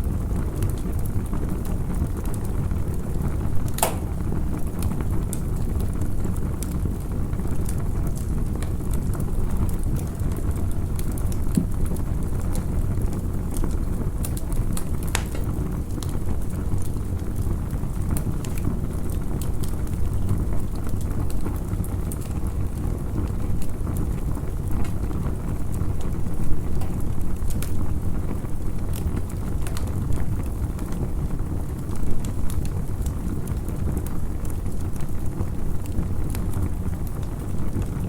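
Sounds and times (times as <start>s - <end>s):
campfire crackling: 0.0s - 38.0s
sharp pops: 3.8s - 4.2s.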